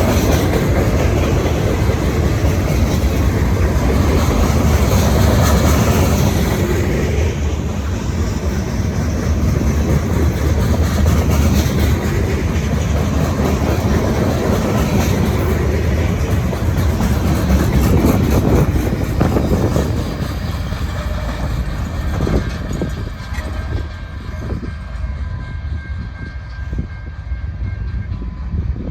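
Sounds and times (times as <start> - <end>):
steel wheels clattering over rail joints: 0.0 - 25.1
freight train rolling past: 0.0 - 28.9.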